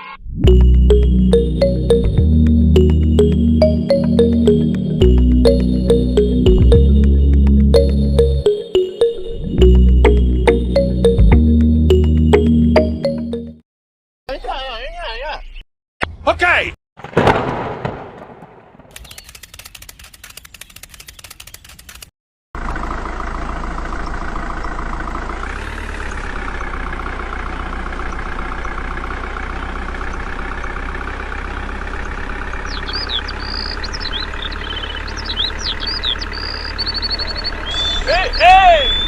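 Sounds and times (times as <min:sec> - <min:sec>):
tractor engine running: 0:00.4 - 0:13.4, 0:18.9 - 0:39.0
high chirps: 0:00.4 - 0:13.6, 0:32.6 - 0:39.0
quick faint clicking: 0:18.9 - 0:22.1.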